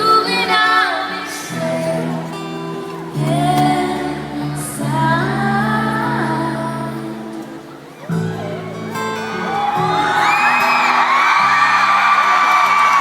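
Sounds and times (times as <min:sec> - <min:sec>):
woman singing a ballad: 0:00.0 - 0:07.6
acoustic guitar: 0:00.0 - 0:13.0.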